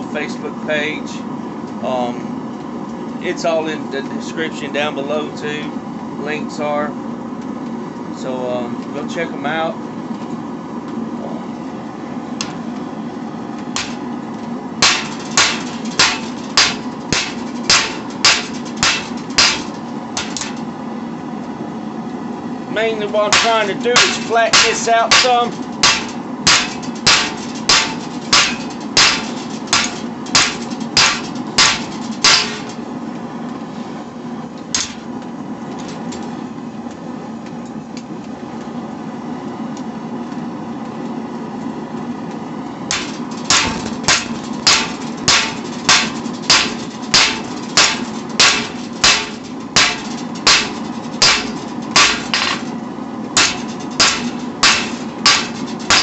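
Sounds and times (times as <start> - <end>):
hammer striking steel on anvil: 13.8 - 14.0, 14.8 - 20.6, 23.1 - 32.8, 42.9 - 52.7, 53.4 - 56.0.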